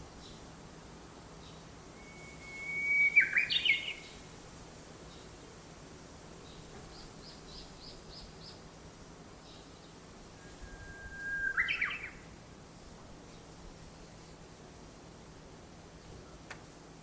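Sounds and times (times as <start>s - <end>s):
songbirds singing: 1.4s - 4.3s, 6.4s - 14.7s.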